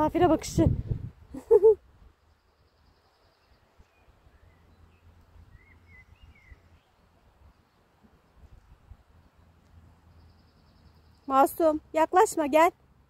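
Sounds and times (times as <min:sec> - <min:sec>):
faint bird chirps: 0:01.4 - 0:08.5, 0:09.2 - 0:11.8.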